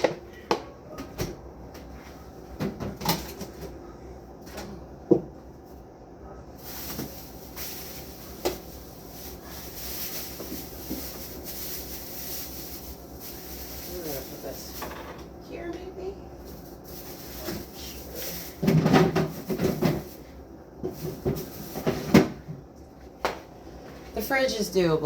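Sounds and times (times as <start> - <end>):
containers and fridge shelves knocking: 18.6 - 20.1.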